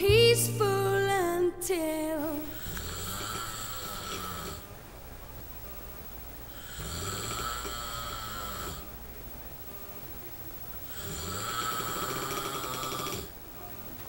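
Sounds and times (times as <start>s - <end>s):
quiet breathing: 2.2s - 14.0s
man snoring heavily: 2.5s - 4.7s, 6.5s - 8.9s, 10.8s - 13.4s.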